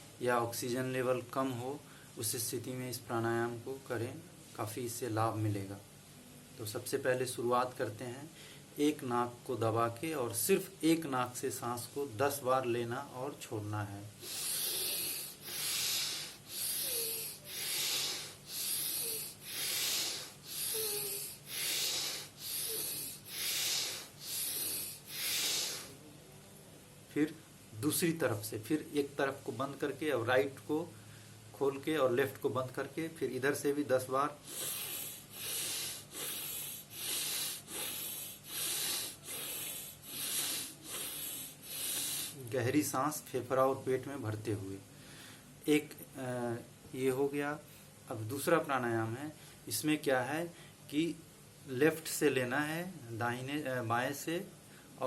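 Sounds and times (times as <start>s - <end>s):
forceful breathing through nose: 14.2s - 26.0s, 34.4s - 42.4s.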